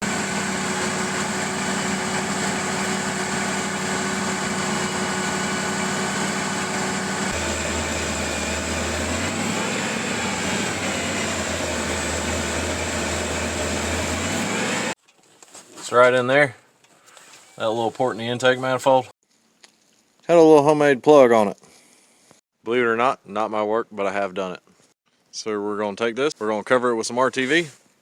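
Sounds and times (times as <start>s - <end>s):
truck engine idling: 0.0s - 15.0s.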